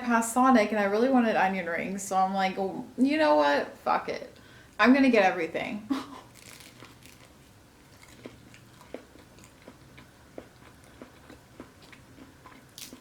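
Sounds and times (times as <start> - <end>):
close chewing: 6.3 - 13.0.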